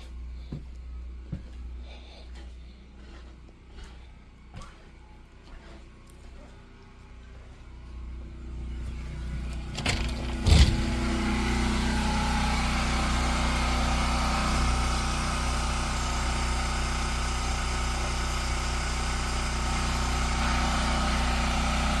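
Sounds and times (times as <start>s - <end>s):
engine starting and humming: 8.4s - 22.0s.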